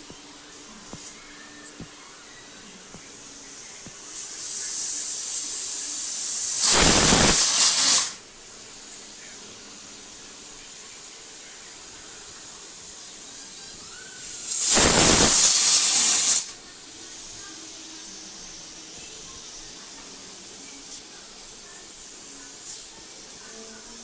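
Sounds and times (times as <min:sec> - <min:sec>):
soft steady steam hiss: 0:00.0 - 0:24.0
pressure cooker whistle blasts: 0:13.8 - 0:16.5.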